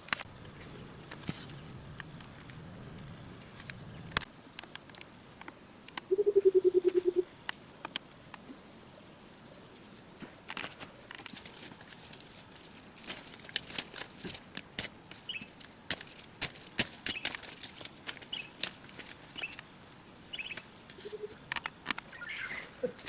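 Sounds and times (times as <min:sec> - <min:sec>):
sharp clicks and snaps: 0:03.5 - 0:06.1, 0:20.5 - 0:22.1.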